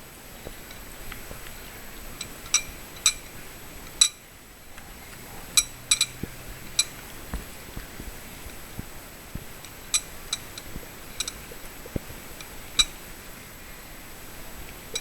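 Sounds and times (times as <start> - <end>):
sharp clicks and clinks: 5.5 - 6.2, 9.6 - 11.4.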